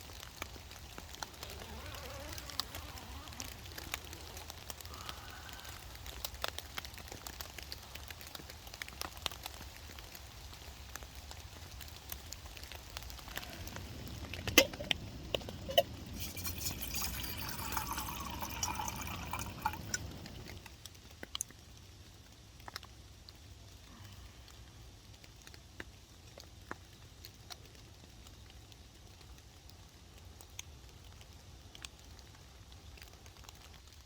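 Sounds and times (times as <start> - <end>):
water trickling: 0.1 - 6.0, 13.2 - 20.7.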